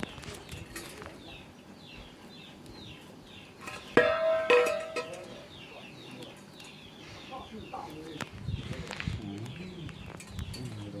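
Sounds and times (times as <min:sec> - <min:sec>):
bird chirping: 0:00.0 - 0:11.0
hollow knocks ringing: 0:04.0 - 0:05.2.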